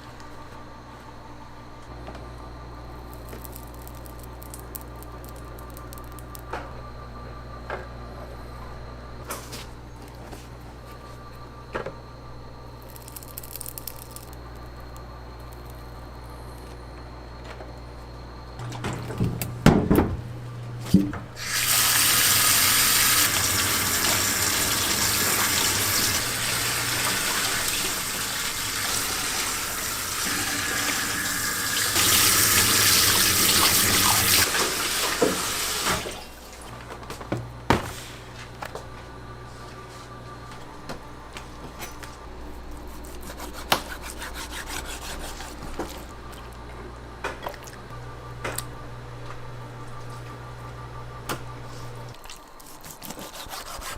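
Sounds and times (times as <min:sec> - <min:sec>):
kitchen knocks and clatters: 0:18.6 - 0:20.2
tap water running into sink: 0:21.4 - 0:36.2.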